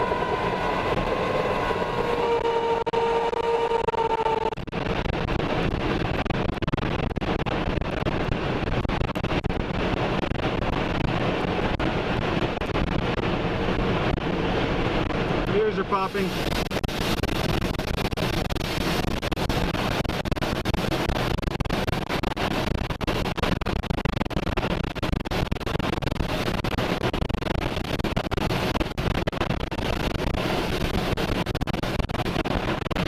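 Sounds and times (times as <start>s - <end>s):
rain: 0.0s - 33.0s
storm wind: 0.0s - 33.0s.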